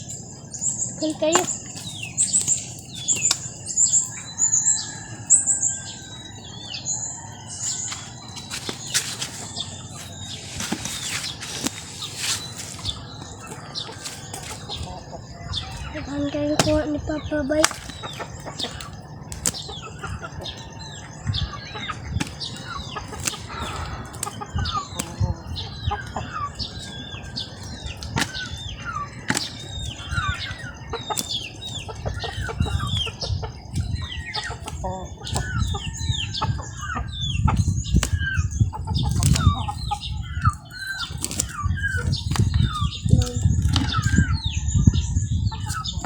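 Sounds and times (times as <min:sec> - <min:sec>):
birds chirping: 0:00.0 - 0:46.0
rustling: 0:07.7 - 0:15.9, 0:22.0 - 0:25.7, 0:40.8 - 0:44.1.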